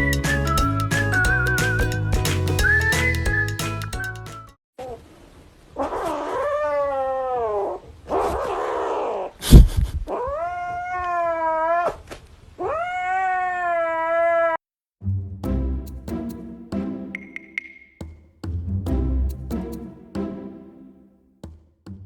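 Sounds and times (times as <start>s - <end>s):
cat yowling meows: 5.8s - 9.3s, 10.1s - 12.0s, 12.6s - 14.6s.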